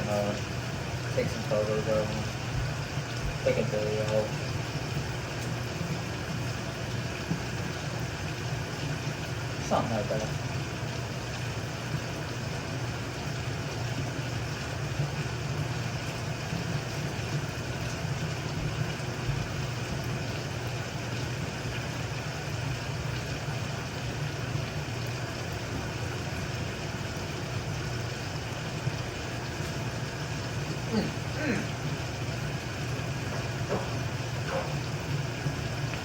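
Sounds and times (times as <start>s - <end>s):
machine motor humming: 25.0s - 36.0s.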